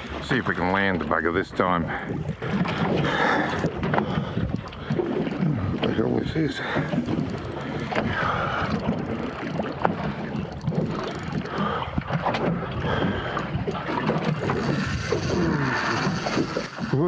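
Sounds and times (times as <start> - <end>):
water around a boat: 0.0 - 17.0
wind on microphone: 6.9 - 17.0.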